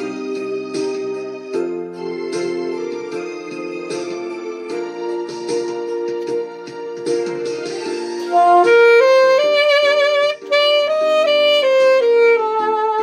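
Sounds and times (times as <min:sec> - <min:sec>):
saxophone melody: 0:00.0 - 0:03.6, 0:07.4 - 0:13.0
backing track chords: 0:00.0 - 0:13.0.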